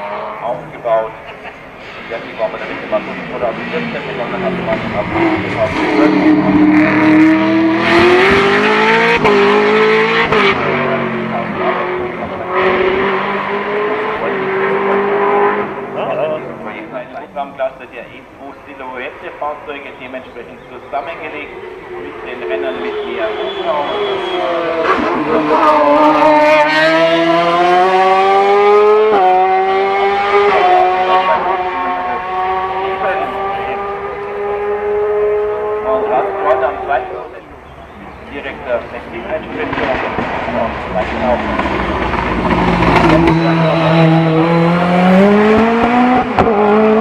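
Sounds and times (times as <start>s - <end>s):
race car engine accelerating: 0.0s - 17.4s, 18.2s - 47.0s
gear change: 18.4s - 47.0s.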